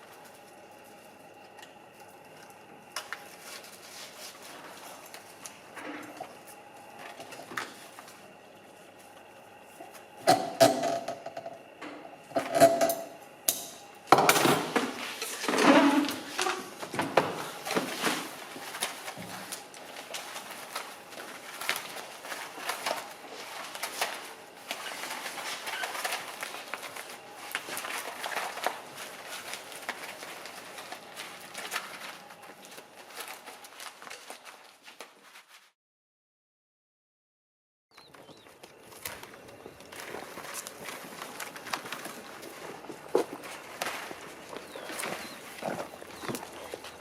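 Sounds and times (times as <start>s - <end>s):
small hard objects clattering: 38.2s - 47.0s.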